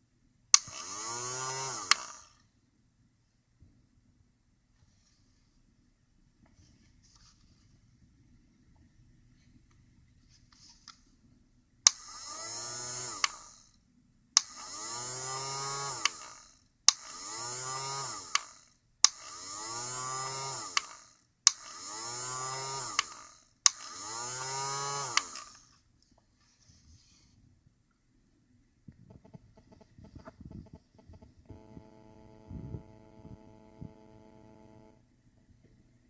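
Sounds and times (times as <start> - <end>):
toy hair dryer switch click: 0.6 - 2.3, 11.9 - 13.6, 14.4 - 25.7
small motor whirring: 0.6 - 2.4, 11.9 - 13.8, 14.4 - 25.8, 29.2 - 35.0.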